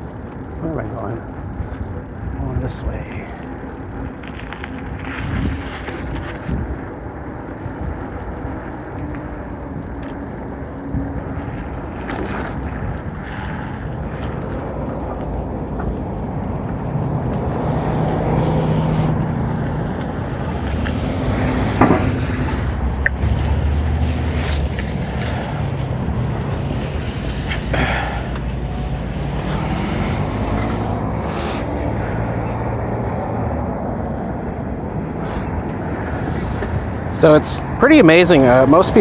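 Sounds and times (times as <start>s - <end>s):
bike rattling and clicking: 0.0s - 39.0s
bike tyre noise: 0.0s - 39.0s
wind rushing over microphone: 1.2s - 27.8s.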